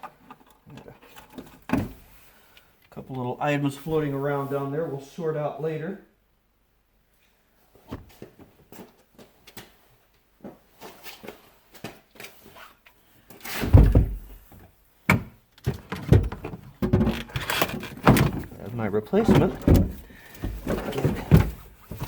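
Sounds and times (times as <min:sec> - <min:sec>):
heavy thud: 0:13.6 - 0:14.4, 0:19.2 - 0:21.6.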